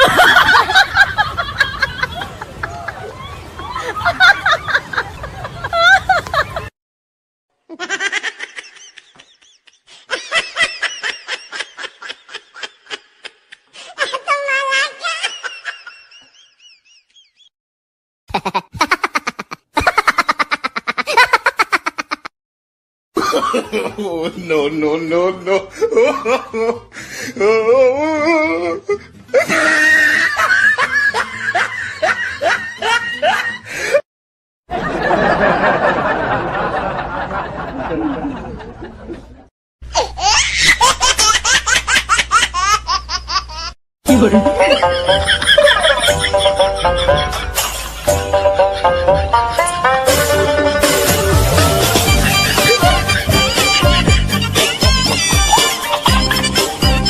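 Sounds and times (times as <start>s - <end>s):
dense noisy laugh: 0.0s - 6.7s, 7.7s - 13.8s, 18.3s - 22.3s, 25.4s - 27.6s, 28.9s - 34.0s, 34.7s - 39.5s, 43.6s - 57.0s
warbling wavering laugh: 0.0s - 6.7s, 7.7s - 17.5s, 18.3s - 22.3s, 28.3s - 33.7s, 40.2s - 57.0s
high-pitched giggling: 18.3s - 22.3s, 39.9s - 47.7s, 51.7s - 57.0s
laugh of short rising ha bursts: 48.8s - 56.8s.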